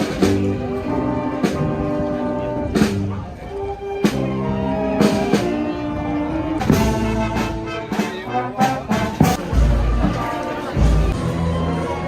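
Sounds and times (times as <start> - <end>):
brass holding chords: 0.0 - 12.0
drum strikes: 8.7 - 11.2.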